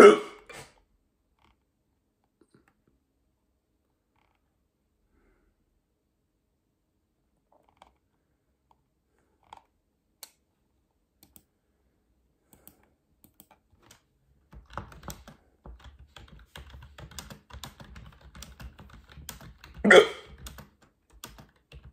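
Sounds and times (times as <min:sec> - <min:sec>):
faint keyboard clicking: 0:07.5 - 0:10.4, 0:11.2 - 0:11.5, 0:12.5 - 0:21.9.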